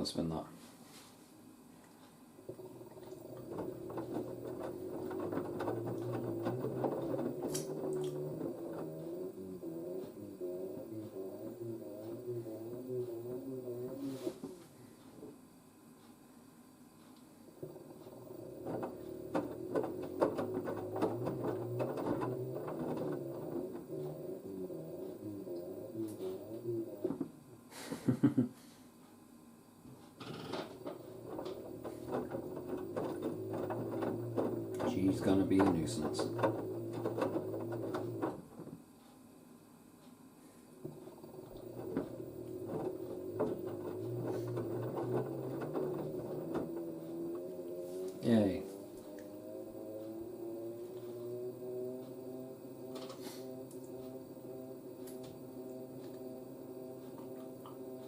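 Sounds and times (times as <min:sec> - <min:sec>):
washing machine motor humming: 0:00.0 - 0:58.0
wet towels knocking in drum: 0:02.6 - 0:09.0
drum knocks and clunks: 0:02.6 - 0:14.6, 0:17.6 - 0:27.4, 0:30.2 - 0:38.8, 0:40.8 - 0:58.0.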